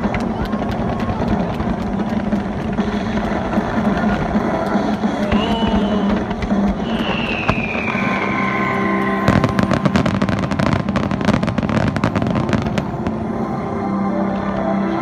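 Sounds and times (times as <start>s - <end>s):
crackling firework bursts: 0.0s - 15.0s
firework whistle: 5.1s - 13.7s.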